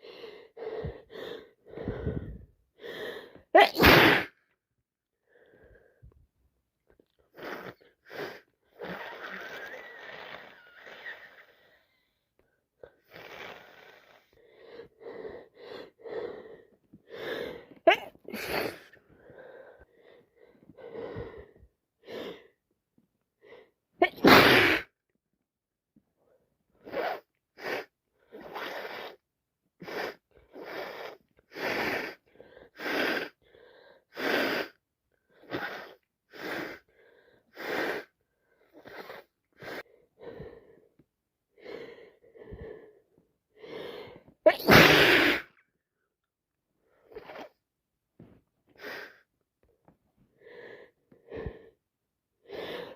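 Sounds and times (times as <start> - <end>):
short gasping breaths: 0.0 - 3.5, 7.2 - 22.6
woman sneezing: 3.6 - 4.4, 17.9 - 18.9, 24.0 - 24.9, 44.5 - 45.5.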